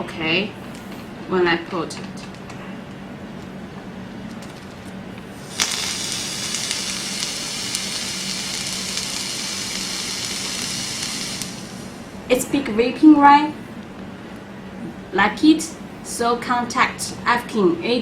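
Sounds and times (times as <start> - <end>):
atomizer coils sizzling: 5.2 - 12.6.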